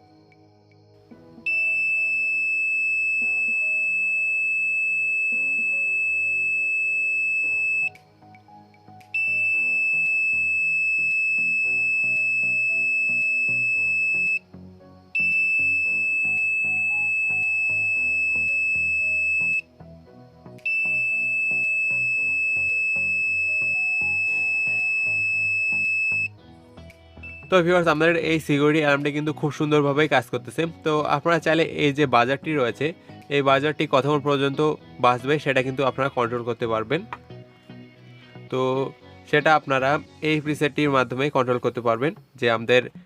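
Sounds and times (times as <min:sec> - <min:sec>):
alarm buzzer high-pitched tone: 0:01.5 - 0:08.0, 0:09.2 - 0:14.4, 0:15.2 - 0:19.7, 0:20.6 - 0:26.3, 0:27.2 - 0:27.6.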